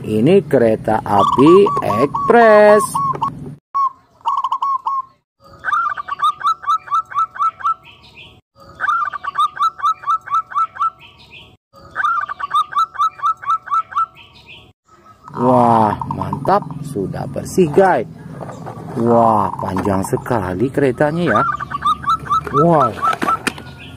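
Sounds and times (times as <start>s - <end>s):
rapid falling bird-like chirps: 1.1s - 17.0s, 19.4s - 23.9s.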